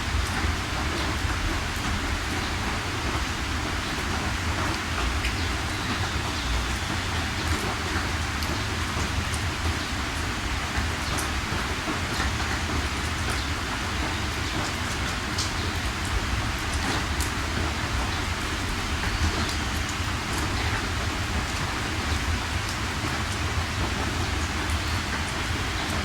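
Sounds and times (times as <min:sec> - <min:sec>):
steady rain falling: 0:00.0 - 0:26.0.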